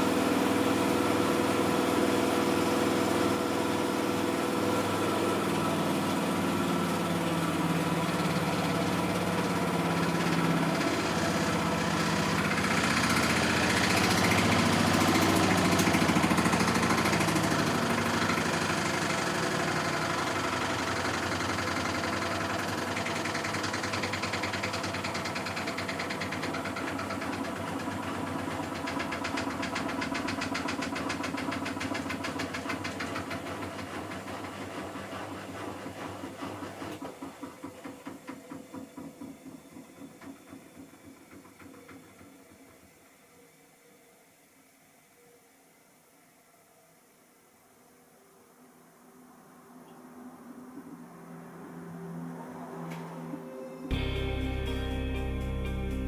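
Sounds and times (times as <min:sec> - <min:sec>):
washing machine humming and rattling: 0:00.0 - 0:43.2.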